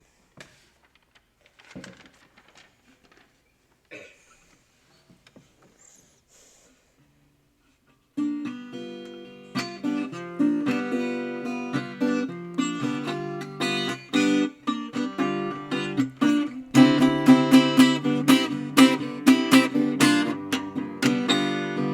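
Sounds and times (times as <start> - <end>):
faint small noises: 0.0 - 21.9
blues guitar strumming: 8.2 - 21.9.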